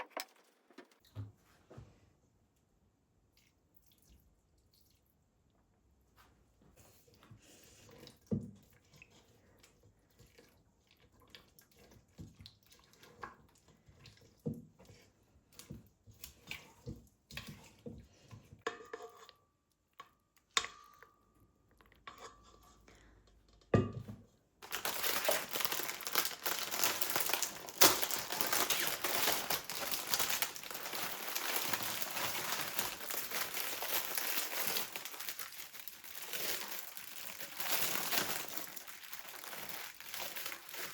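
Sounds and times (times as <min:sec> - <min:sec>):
dense crinkling and crackling: 0:00.0 - 0:01.1, 0:24.6 - 0:40.9.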